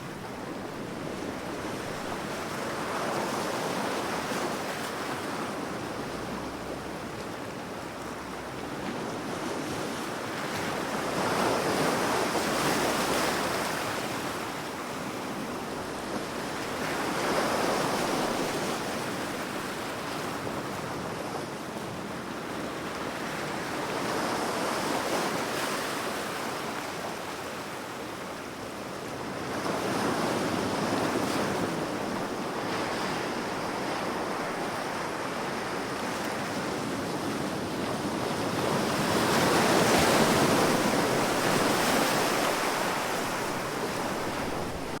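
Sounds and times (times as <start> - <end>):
sea waves washing onto shore: 29.2 - 45.0.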